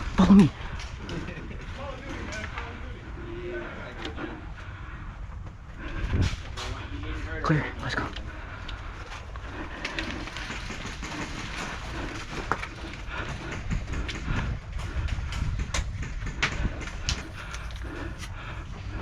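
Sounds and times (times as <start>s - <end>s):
low rumble of wind noise: 0.0s - 19.0s
rustling shuffling movement: 17.2s - 19.0s.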